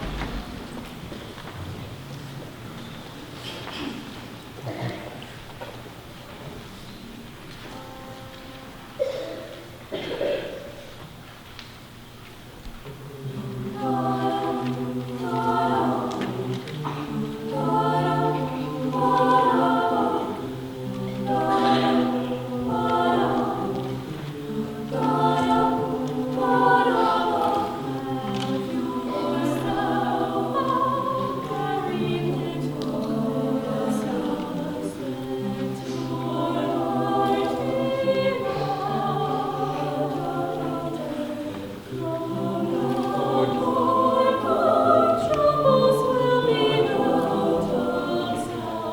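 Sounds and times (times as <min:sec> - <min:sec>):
choir singing in parts: 0:12.9 - 0:48.9.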